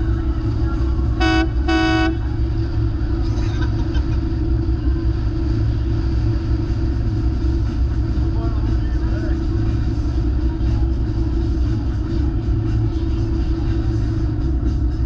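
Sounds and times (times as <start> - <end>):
vehicle engine rumble: 0.0 - 15.0
vehicle horn toots: 1.2 - 2.3.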